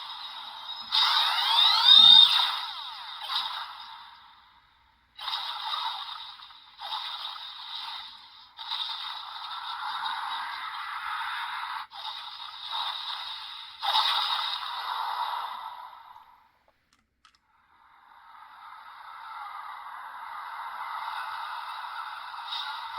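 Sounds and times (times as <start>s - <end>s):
toy sound effects from small speaker: 1.0s - 2.6s.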